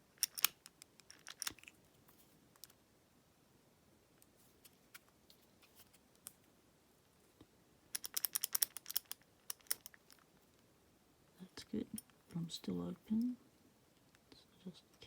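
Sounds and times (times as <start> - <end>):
plastic padlock clicking: 0.2 - 1.7, 8.0 - 10.2.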